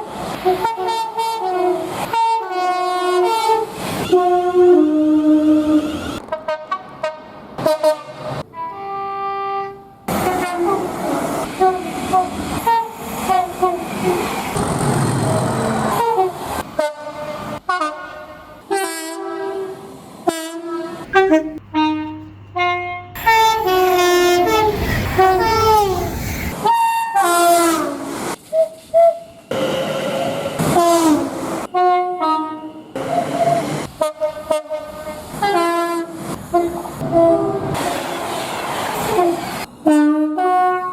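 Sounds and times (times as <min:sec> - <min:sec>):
locomotive horn blasts: 0:20.3 - 0:26.6, 0:30.6 - 0:36.8
rail wheel clatter: 0:21.0 - 0:26.7.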